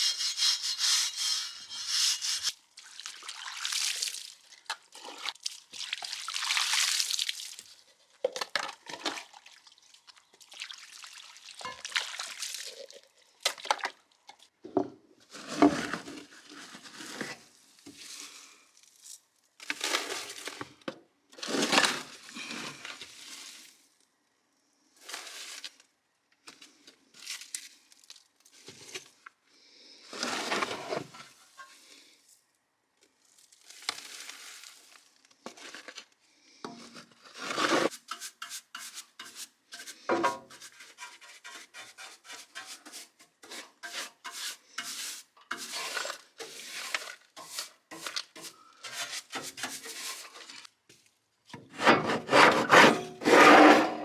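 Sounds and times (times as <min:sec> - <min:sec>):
hand scrubbing a hard surface: 0:00.0 - 0:02.5, 0:37.8 - 0:50.5, 0:51.8 - 0:54.0.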